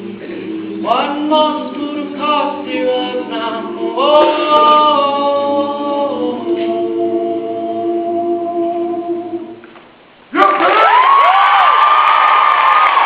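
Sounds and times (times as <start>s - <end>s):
group singing a cappella: 0.0s - 9.6s.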